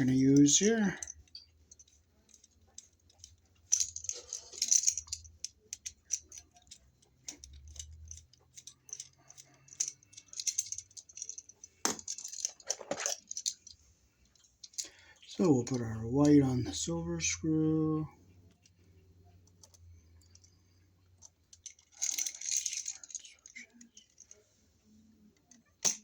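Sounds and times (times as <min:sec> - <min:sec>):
screwdriver metallic ticks and rattles: 0:00.4 - 0:13.8.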